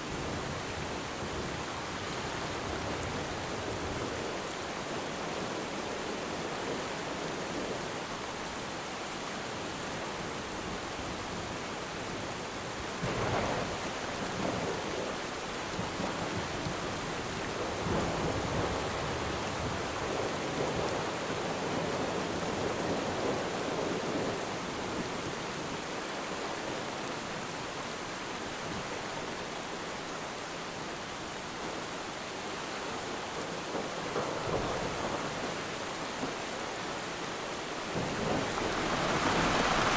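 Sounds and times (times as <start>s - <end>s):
rain falling on water: 0.0s - 39.9s
distant thunder rumbling: 37.9s - 39.9s.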